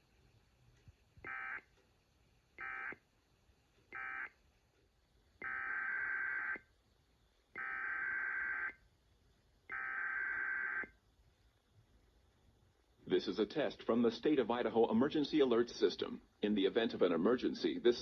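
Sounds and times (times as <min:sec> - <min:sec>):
harsh buzzing data bursts: 0:07.6 - 0:08.8.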